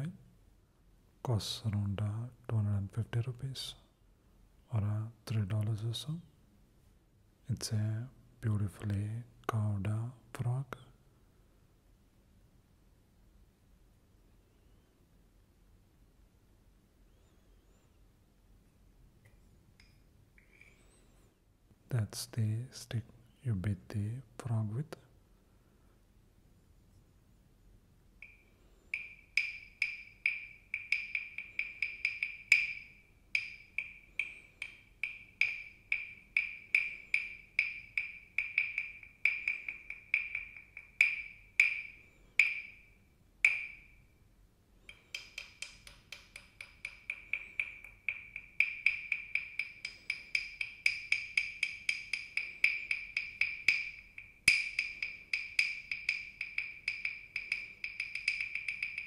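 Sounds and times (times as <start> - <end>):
wooden taps: 44.9 - 59.0.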